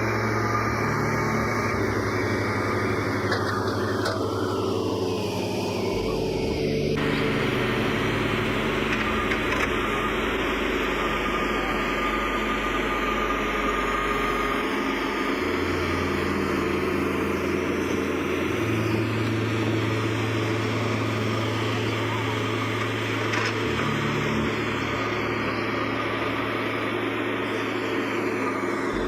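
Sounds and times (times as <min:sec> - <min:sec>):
broad noisy hiss: 0:00.0 - 0:29.0
vehicle engine running: 0:00.0 - 0:29.0.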